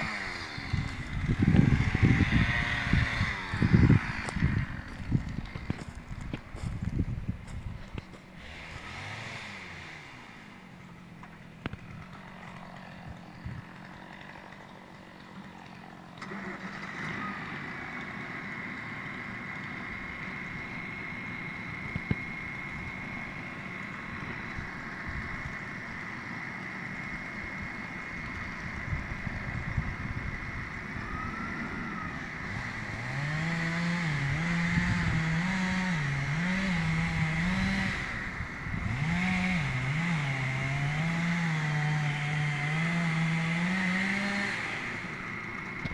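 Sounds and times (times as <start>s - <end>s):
engine running with high whine: 0.0s - 45.9s.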